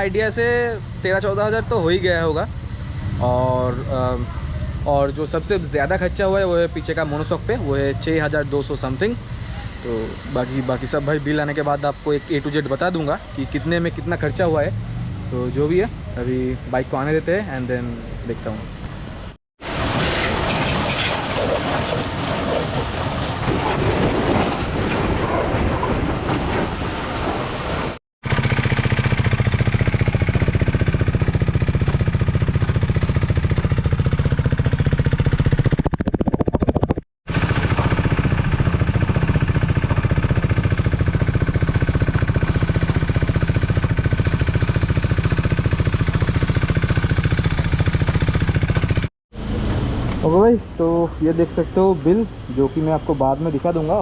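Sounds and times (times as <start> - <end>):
motorcycle engine running: 0.0 - 16.5, 28.2 - 49.8.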